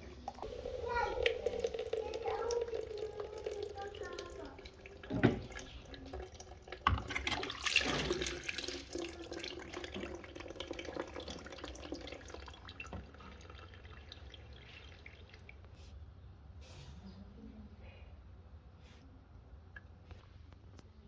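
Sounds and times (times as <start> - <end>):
water pouring and splashing: 0.1 - 15.8.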